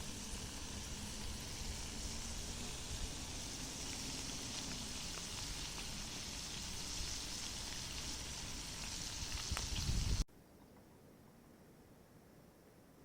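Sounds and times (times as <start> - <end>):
shrimp sizzling in hot oil: 0.0 - 10.3.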